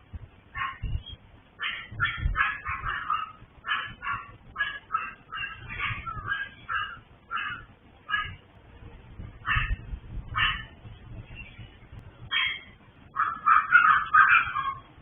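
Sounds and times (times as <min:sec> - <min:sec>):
small dogs yapping: 0:00.6 - 0:00.9, 0:01.6 - 0:08.4, 0:12.3 - 0:15.0.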